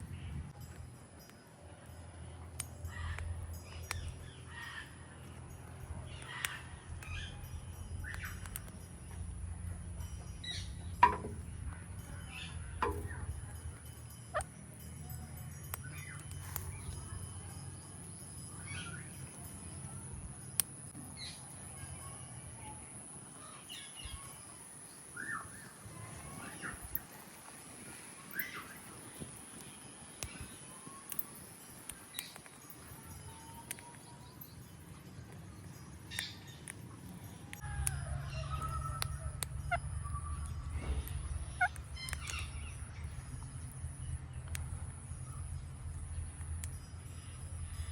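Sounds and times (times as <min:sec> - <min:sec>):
parakeet chirps and squawks: 0:38.2 - 0:42.9.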